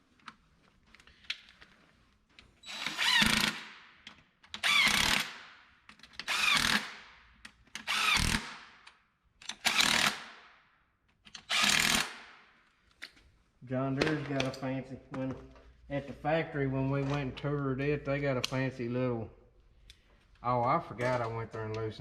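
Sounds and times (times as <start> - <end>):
power tool whine driving bolts: 2.6 - 3.6.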